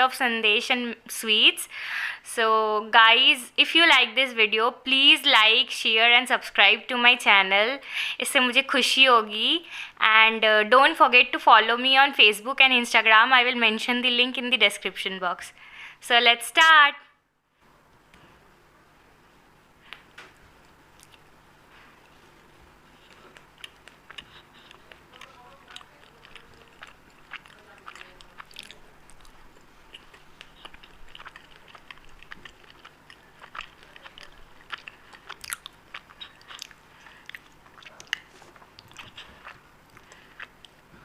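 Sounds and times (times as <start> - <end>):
person chewing and biting: 20.6 - 40.9.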